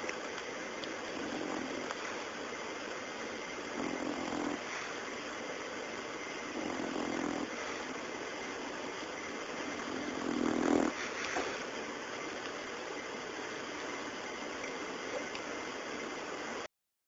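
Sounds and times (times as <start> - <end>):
dog snoring: 1.1 - 2.4, 3.5 - 5.4, 6.2 - 8.1, 9.6 - 11.7.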